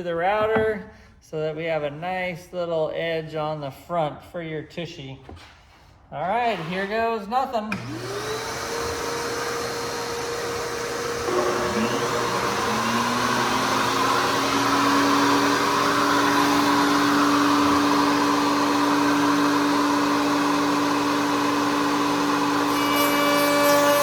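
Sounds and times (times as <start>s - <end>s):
wood router whining: 7.7s - 24.0s.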